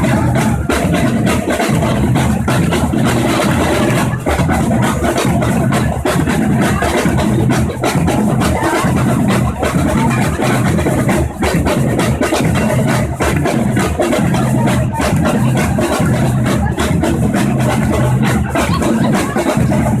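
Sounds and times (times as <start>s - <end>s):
percussion ensemble drumming: 0.0s - 20.0s.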